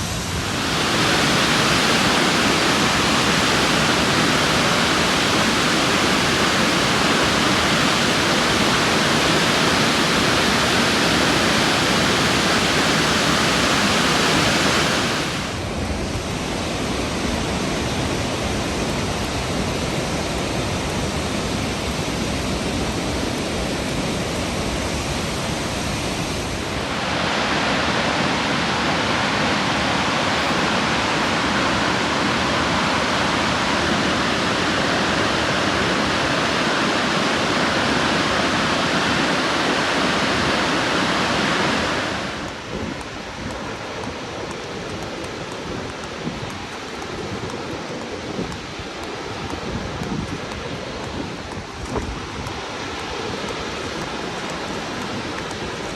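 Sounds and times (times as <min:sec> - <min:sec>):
waterfall pouring: 0:00.4 - 0:15.6.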